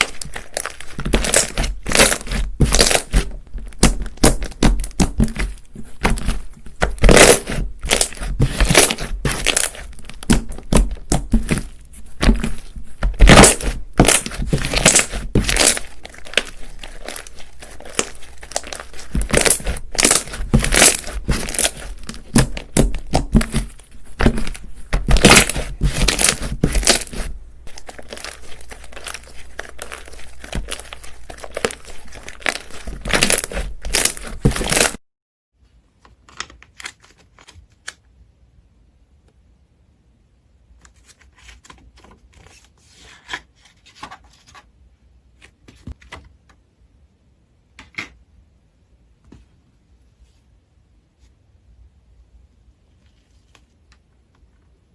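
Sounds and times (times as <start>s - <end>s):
slime squishing with sticky crackles: 0.0s - 35.0s.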